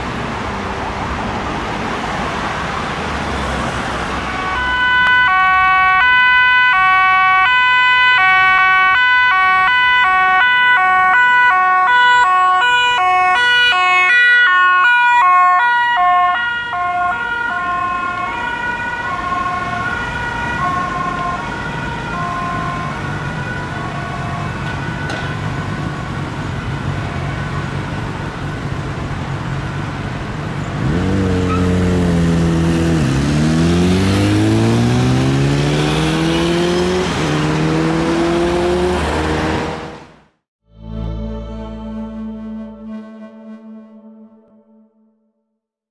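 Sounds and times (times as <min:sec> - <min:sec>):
two-tone emergency siren: 0:03.9 - 0:29.9, 0:40.7 - 0:45.4
vehicle engine revving: 0:30.7 - 0:40.2.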